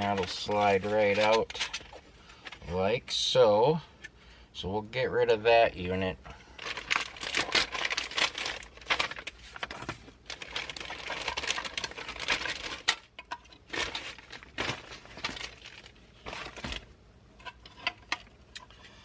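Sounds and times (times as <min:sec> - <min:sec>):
rustling of wiring: 0:00.0 - 0:03.0, 0:06.2 - 0:19.0
plastic and metal pieces knocking: 0:06.6 - 0:18.8.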